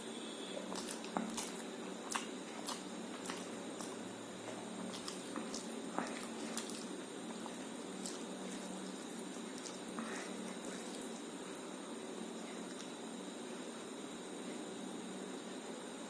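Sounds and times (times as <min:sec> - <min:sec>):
person chewing food: 0:00.7 - 0:11.7, 0:12.3 - 0:13.0.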